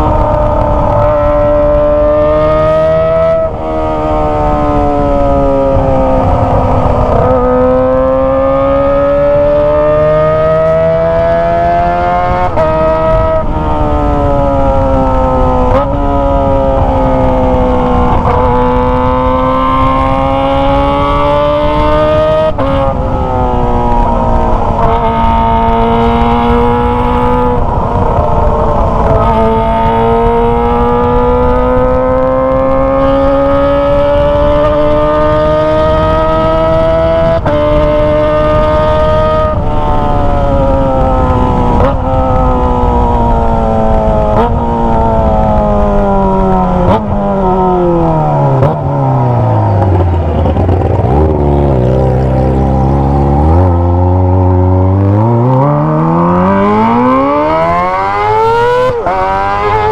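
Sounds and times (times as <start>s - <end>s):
motorcycle engine revving high: 0.0s - 59.9s.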